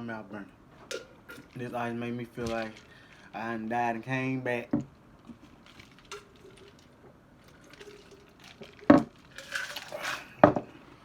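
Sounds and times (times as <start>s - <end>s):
ice and liquid sloshing: 1.3s - 4.0s, 5.2s - 10.4s
cup knocking: 10.4s - 10.7s.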